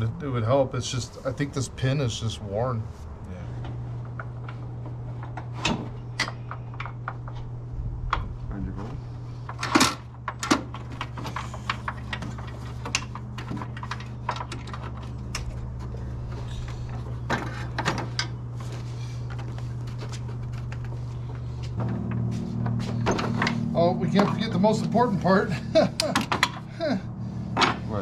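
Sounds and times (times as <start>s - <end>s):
low hum: 0.0s - 28.0s
light clicks and metallic rattles: 9.4s - 18.4s, 25.9s - 26.7s.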